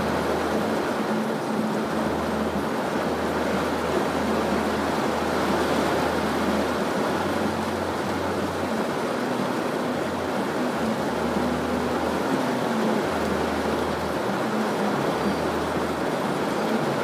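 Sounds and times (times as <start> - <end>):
heavy rain falling: 0.0 - 17.0.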